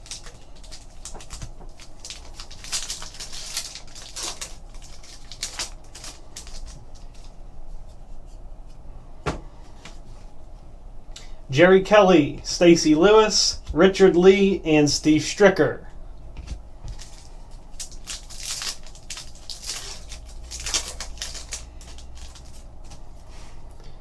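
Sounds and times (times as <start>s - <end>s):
trading cards clicking and rustling: 0.0s - 7.4s, 16.4s - 23.1s.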